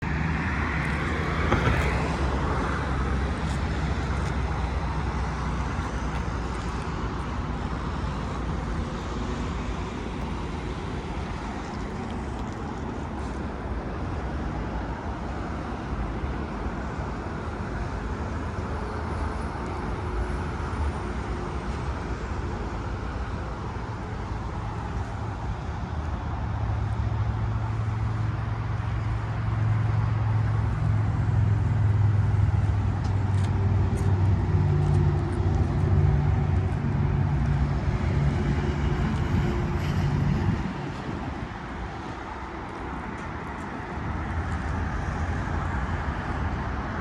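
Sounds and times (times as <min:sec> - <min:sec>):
engine running with low rumble: 0:00.0 - 0:47.0.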